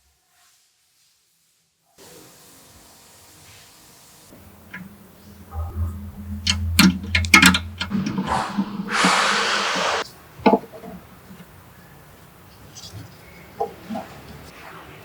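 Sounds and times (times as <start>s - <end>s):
steady hiss: 0.3s - 10.0s
low hum: 4.3s - 10.0s.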